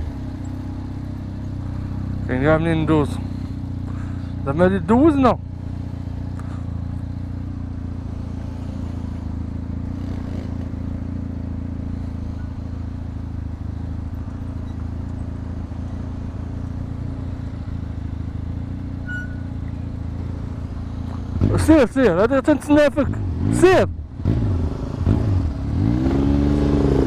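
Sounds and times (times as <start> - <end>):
motorcycle engine humming: 0.0 - 27.0.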